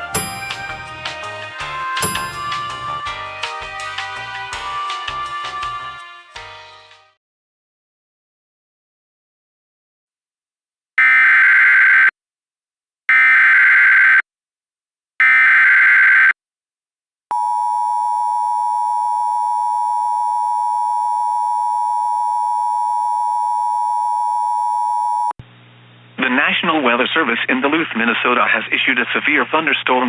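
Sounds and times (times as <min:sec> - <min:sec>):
two-tone attention signal: 0:00.0 - 0:03.1, 0:17.3 - 0:25.3.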